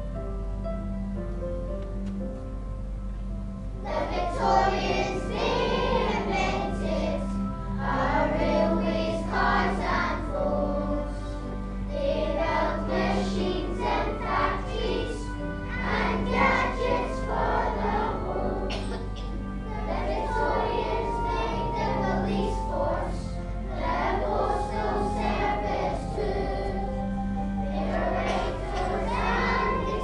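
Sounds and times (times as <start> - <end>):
held instrumental accompaniment: 0.0 - 30.0
children singing together: 3.8 - 30.0.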